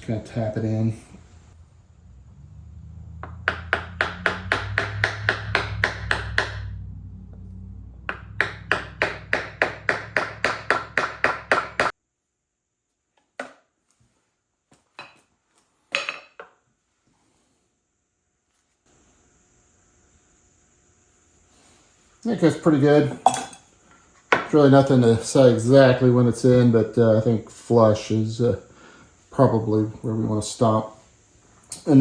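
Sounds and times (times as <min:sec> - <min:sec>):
low hum: 0:00.0 - 0:11.9.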